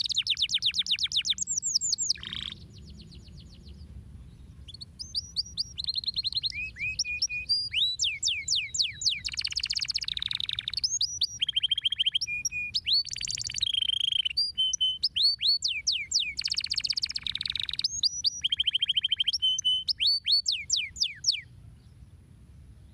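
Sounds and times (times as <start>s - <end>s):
canary singing: 0.0s - 3.7s, 4.6s - 21.5s.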